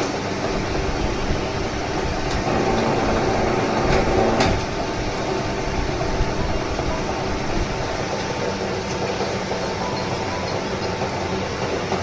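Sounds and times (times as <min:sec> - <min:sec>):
wire stripping machine running: 0:00.0 - 0:12.0.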